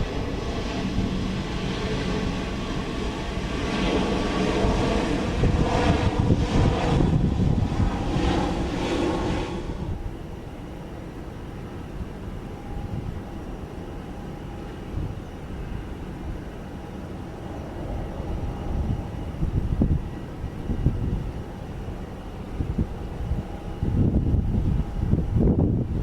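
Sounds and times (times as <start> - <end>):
airliner jet engines rumbling: 0.0 - 26.0.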